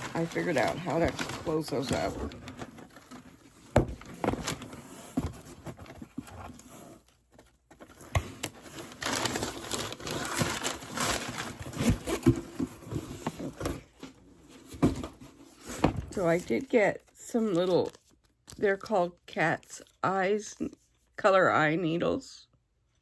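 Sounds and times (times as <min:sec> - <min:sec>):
packaging rustling and crinkling: 0:00.0 - 0:16.7.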